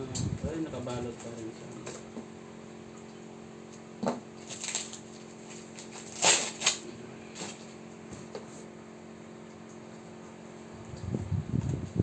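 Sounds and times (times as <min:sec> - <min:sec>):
packaging rustling and crinkling: 0:04.4 - 0:06.8.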